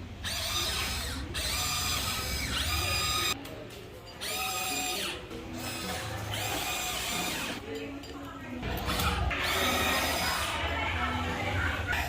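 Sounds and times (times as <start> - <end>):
electric motors whining: 0.2 - 3.4.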